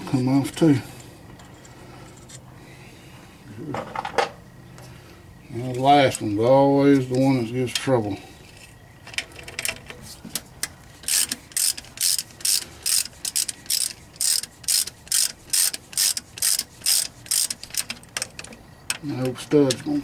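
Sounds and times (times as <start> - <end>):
ratchet wrench clicking: 10.6 - 19.0.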